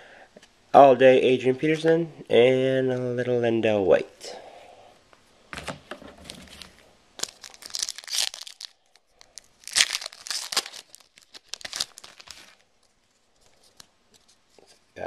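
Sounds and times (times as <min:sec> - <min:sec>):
wrapper tearing and crumpling: 0:06.3 - 0:12.7.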